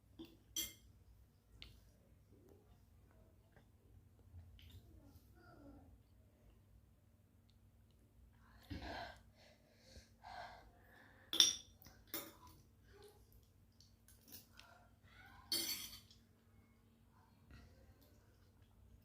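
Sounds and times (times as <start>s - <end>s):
cutlery clinking: 15.5s - 16.2s.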